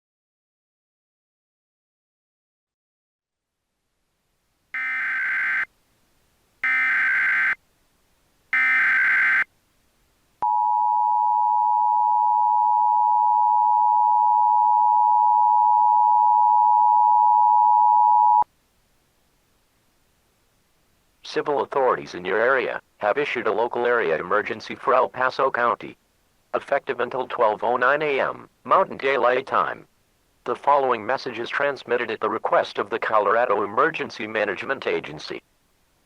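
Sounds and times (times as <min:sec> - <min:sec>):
buzzy digital data bursts: 0:06.6 - 0:07.6, 0:08.6 - 0:09.5
two-tone attention signal: 0:06.6 - 0:07.6, 0:08.6 - 0:09.4.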